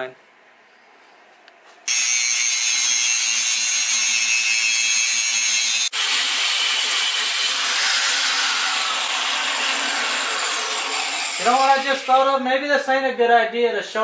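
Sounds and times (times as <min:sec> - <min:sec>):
grinder grinding steel tube: 0:01.9 - 0:12.5.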